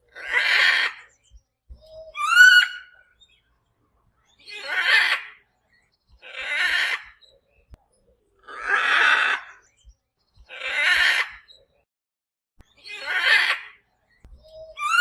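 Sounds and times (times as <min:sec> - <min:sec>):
parrot squawking: 0:04.5 - 0:05.4, 0:12.9 - 0:13.8.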